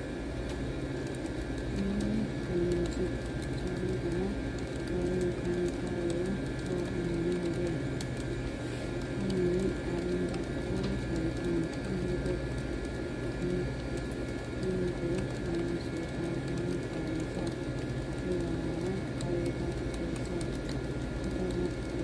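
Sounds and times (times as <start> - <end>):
keyboard typing clicks: 0.5 - 8.3, 9.0 - 22.0
dove cooing: 9.0 - 13.8, 14.5 - 22.0.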